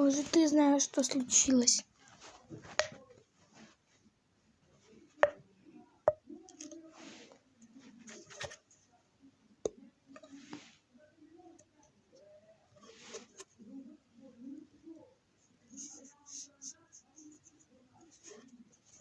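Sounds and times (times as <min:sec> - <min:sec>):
faint muffled sounds: 0:00.0 - 0:19.0.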